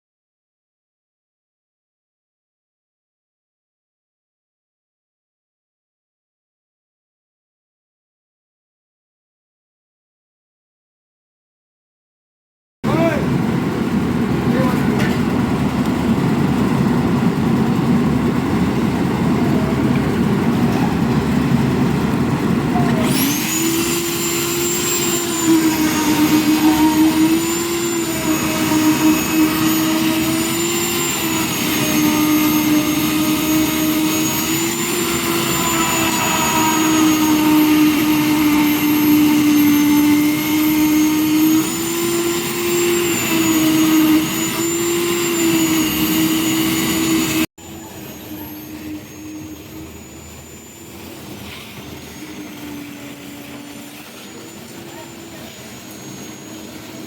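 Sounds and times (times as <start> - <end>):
mixer engine whining: 12.9 - 57.0.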